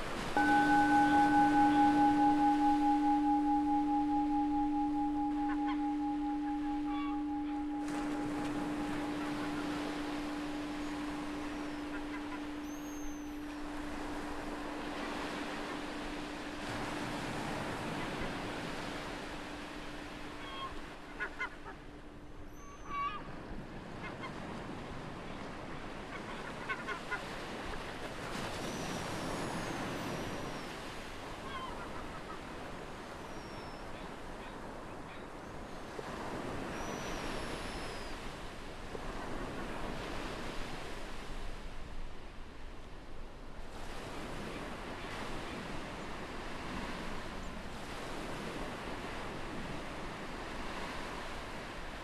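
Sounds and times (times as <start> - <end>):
ocean waves washing on beach: 0.0 - 22.2, 34.0 - 52.0
meditation bell ringing: 0.0 - 22.6
seagulls calling: 0.4 - 19.0.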